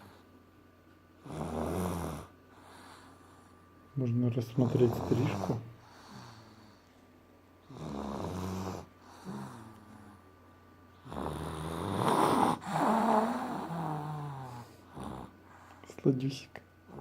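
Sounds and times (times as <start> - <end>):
person snoring: 1.2 - 3.2, 4.6 - 6.8, 7.6 - 10.2, 11.0 - 15.3.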